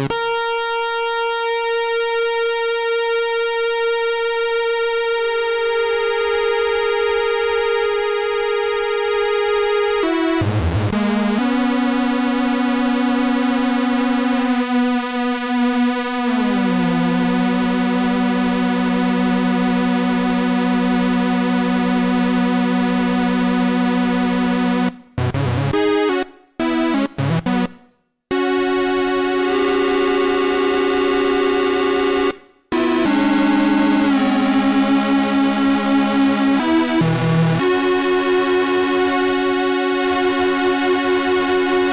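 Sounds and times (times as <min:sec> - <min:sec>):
analogue synthesizer holding a note: 0:13.4 - 0:24.9, 0:28.3 - 0:41.9.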